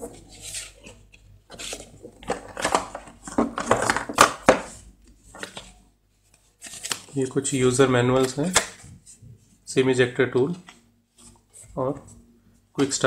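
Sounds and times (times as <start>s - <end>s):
cardboard and paper packaging rustling: 0.0s - 9.6s.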